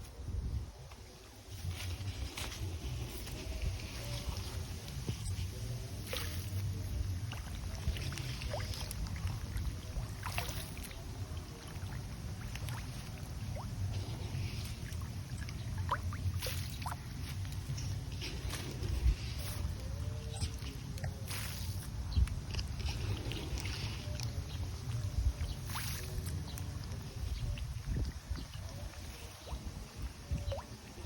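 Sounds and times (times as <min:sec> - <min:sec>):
fish splashing at water surface: 0:05.2 - 0:22.0, 0:22.6 - 0:28.3.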